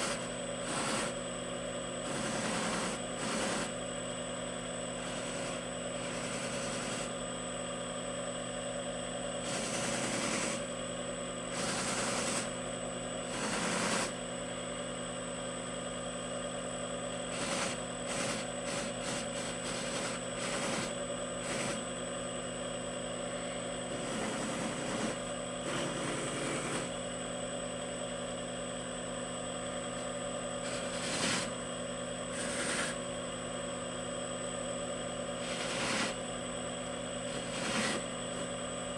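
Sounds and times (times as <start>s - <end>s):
electric motor humming and whining: 0.0s - 7.2s, 9.4s - 10.8s, 11.5s - 12.6s, 13.3s - 14.6s, 17.2s - 22.0s, 23.2s - 27.2s, 29.7s - 31.7s, 32.3s - 33.4s, 35.3s - 38.9s.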